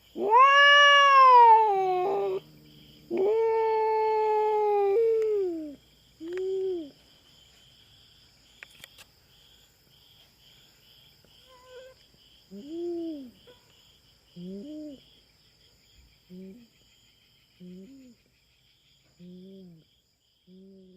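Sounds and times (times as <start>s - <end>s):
insects chirping: 0.0s - 20.9s
cat yowling: 0.1s - 5.8s.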